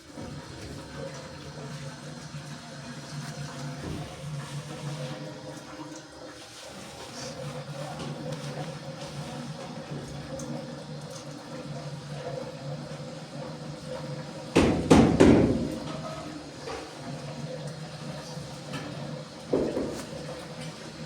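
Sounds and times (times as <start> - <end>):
loud knocks: 14.6 - 15.9.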